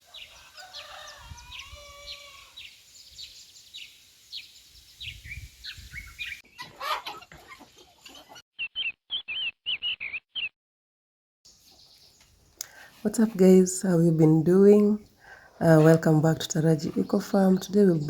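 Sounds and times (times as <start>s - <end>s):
small birds chirping: 0.0s - 10.5s, 11.5s - 18.0s
rooster crowing: 0.1s - 2.7s.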